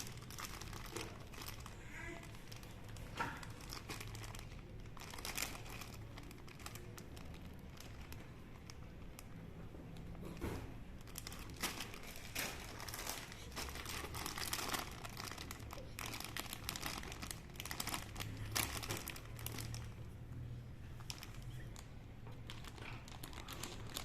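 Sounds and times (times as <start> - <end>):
packaging crinkling and rustling: 0.0 - 24.0.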